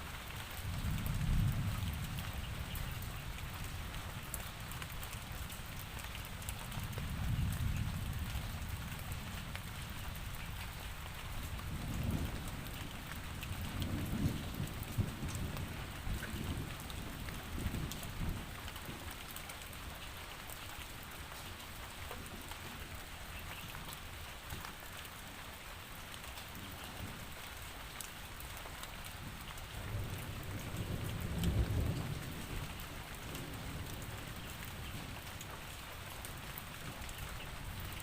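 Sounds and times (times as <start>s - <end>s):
steady rain falling: 0.0s - 38.0s
distant thunder rumbling: 11.4s - 19.1s, 29.2s - 35.2s.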